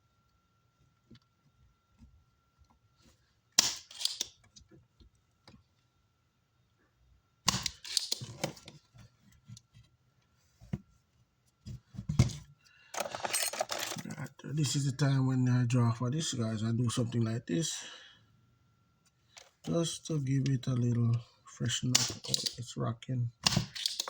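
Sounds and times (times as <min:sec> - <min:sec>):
tools clicking and clattering: 0:03.6 - 0:04.5, 0:07.5 - 0:08.6, 0:13.0 - 0:14.2, 0:22.0 - 0:22.6, 0:23.4 - 0:24.0.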